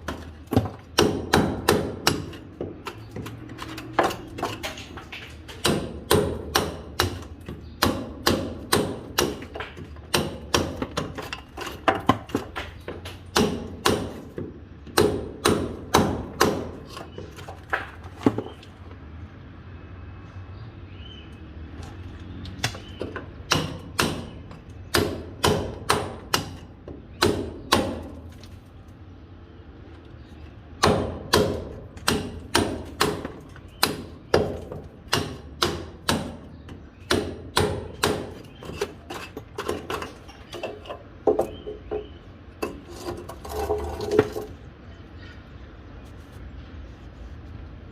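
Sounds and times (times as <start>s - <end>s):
hammer striking chisel on masonry: 0.0s - 18.6s, 22.5s - 28.3s, 30.8s - 43.7s.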